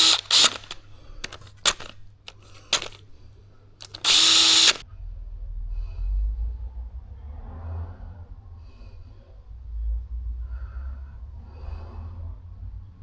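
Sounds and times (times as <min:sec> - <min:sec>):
metallic clicks of tools: 0:00.0 - 0:03.0, 0:03.8 - 0:04.8
power drill burst: 0:00.0 - 0:03.1, 0:03.8 - 0:04.8.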